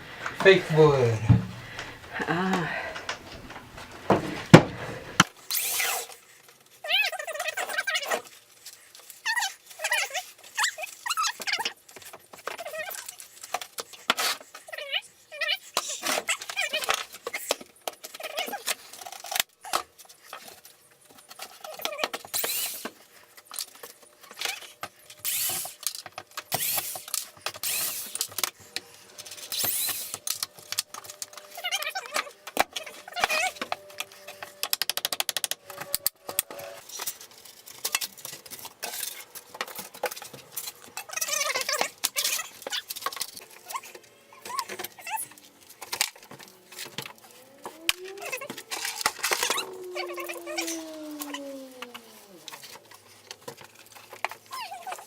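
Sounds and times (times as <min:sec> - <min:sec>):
wood paneling being ripped out: 0:03.6 - 0:20.6, 0:21.2 - 0:28.6, 0:29.2 - 0:55.0
wood squeaking: 0:38.8 - 0:55.0.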